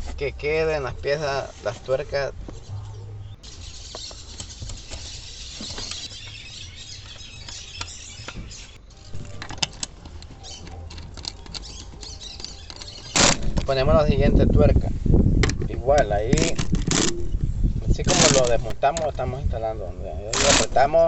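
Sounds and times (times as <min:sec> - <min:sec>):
small metallic clicks: 0:09.3 - 0:13.4.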